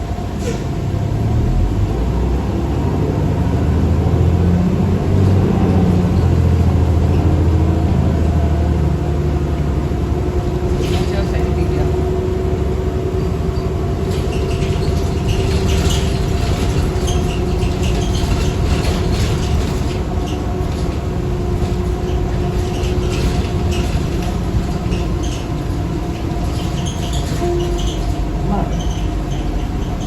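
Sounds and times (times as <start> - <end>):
bus engine rumble and whine: 0.0 - 30.0
interior panels rattling: 13.5 - 30.0.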